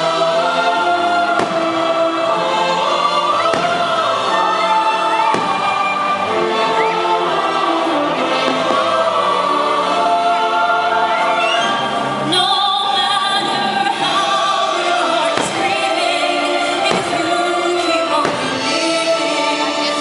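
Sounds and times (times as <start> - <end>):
choir singing: 0.0 - 20.0
orchestral music: 0.0 - 20.0
fireworks bangs: 1.2 - 2.2, 3.3 - 7.0, 8.3 - 9.2, 14.0 - 19.0.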